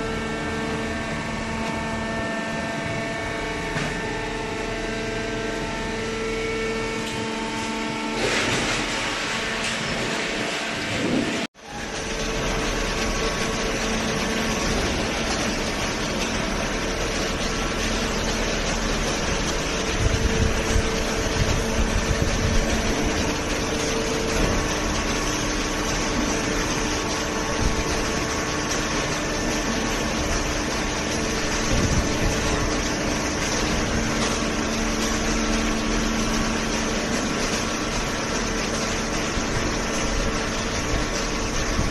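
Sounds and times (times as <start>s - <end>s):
baler hydraulic hum: 0.0s - 41.9s.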